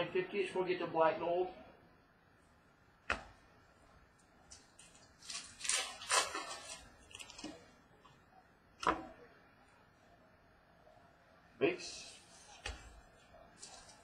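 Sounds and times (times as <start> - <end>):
card packs crinkling and rustling: 4.8 - 7.6.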